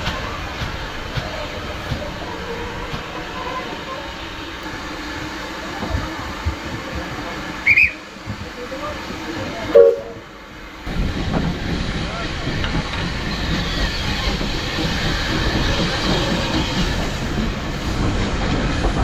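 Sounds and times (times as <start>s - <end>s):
steam train rumbling: 0.0s - 19.0s
short high-pitched sound: 9.7s - 10.2s.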